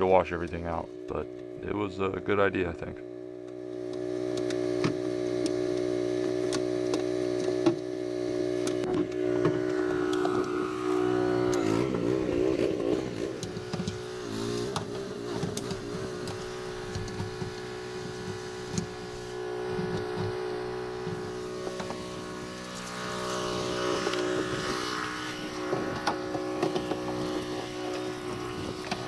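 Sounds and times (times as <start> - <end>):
pressure washer spraying: 9.2 - 29.0.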